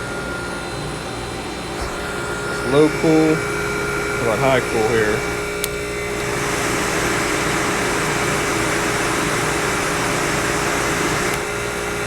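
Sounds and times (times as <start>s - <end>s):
air conditioner fan rushing: 0.0s - 12.0s
compressor hum: 0.0s - 12.0s
air conditioner click: 1.8s - 6.0s, 11.1s - 11.6s.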